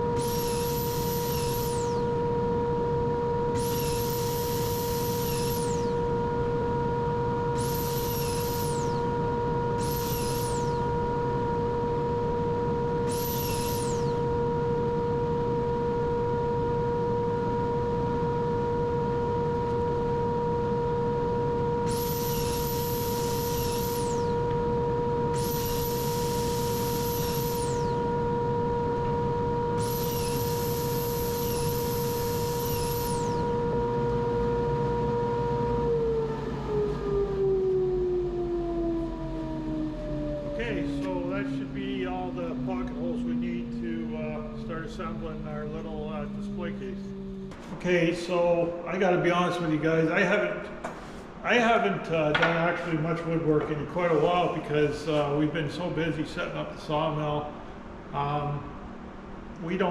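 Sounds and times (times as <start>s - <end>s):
shop machine humming: 0.0s - 59.8s
high-pitched whine: 0.0s - 59.9s.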